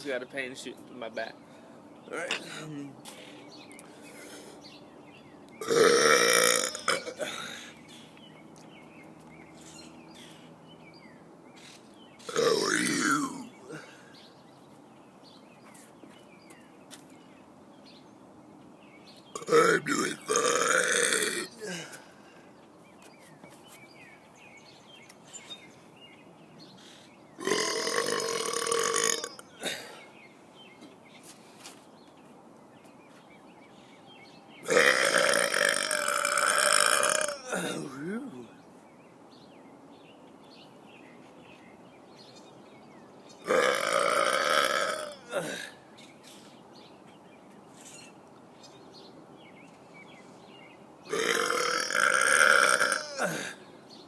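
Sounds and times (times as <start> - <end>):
man burping: 2.1 - 2.9, 5.6 - 7.8, 12.3 - 14.0, 19.4 - 22.1, 27.4 - 30.1, 34.6 - 38.5, 43.4 - 45.8, 51.1 - 53.7.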